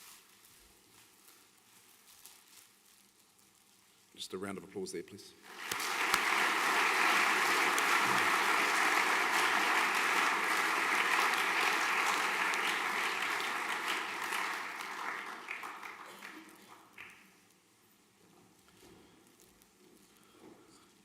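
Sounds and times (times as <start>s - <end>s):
audience applauding: 5.5s - 17.3s.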